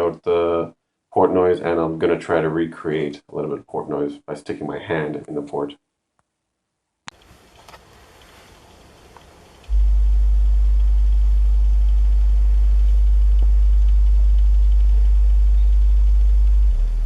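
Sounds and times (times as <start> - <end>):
subwoofer low test tone: 9.7 - 17.0.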